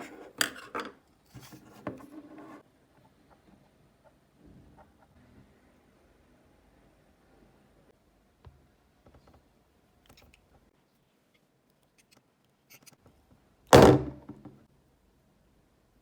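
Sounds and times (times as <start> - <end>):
loud thunk: 13.7 - 14.6.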